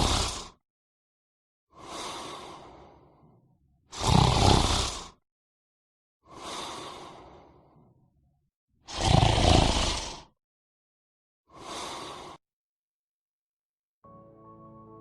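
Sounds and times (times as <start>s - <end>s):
person snoring: 0.0s - 0.6s, 4.0s - 5.2s, 8.9s - 10.4s
soft breathy breaths: 1.8s - 3.4s, 6.3s - 7.9s, 11.5s - 12.4s.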